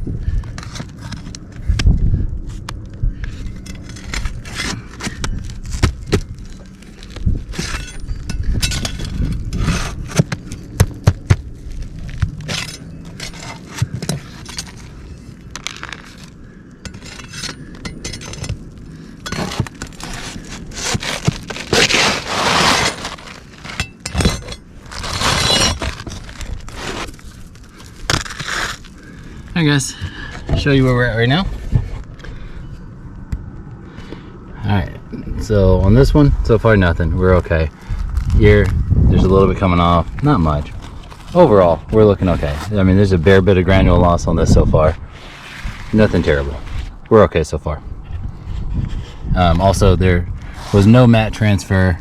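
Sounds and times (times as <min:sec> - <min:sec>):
metal tool scraping roof shingles: 0:03.2 - 0:29.7.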